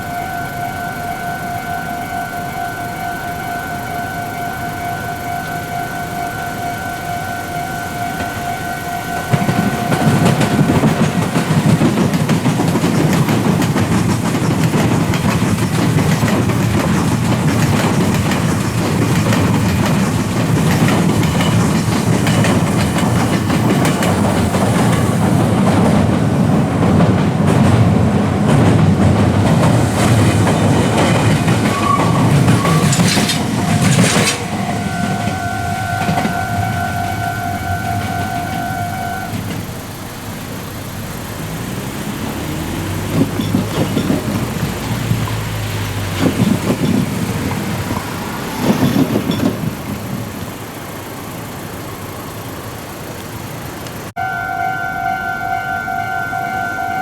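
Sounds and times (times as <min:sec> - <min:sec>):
level crossing alarm bell: 0:00.0 - 0:14.2, 0:28.5 - 0:39.6, 0:54.2 - 0:57.0
train wheels clattering on rails: 0:00.0 - 0:54.1.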